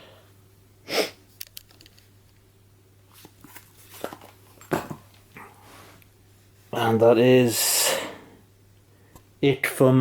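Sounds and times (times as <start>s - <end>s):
handling rustle: 3.1s - 5.0s.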